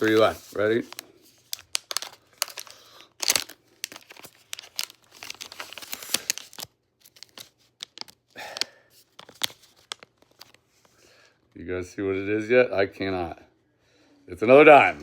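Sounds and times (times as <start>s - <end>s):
packaging tearing and crinkling: 0.0s - 10.6s.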